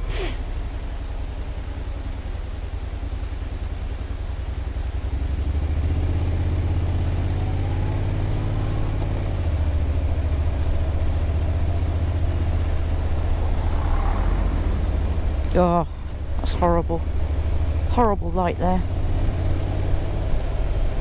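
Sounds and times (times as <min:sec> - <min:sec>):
motorcycle engine running: 0:00.0 - 0:21.0
steady rushing noise: 0:00.0 - 0:21.0.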